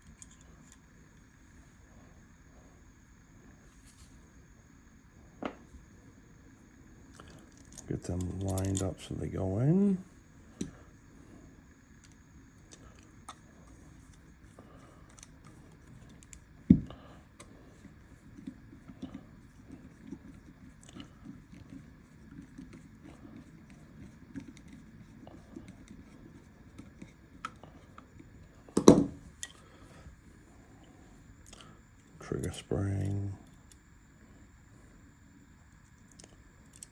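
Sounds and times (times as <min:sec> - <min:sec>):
metal clicks and scrapes of revolver parts: 0:00.0 - 0:00.8, 0:07.5 - 0:09.0.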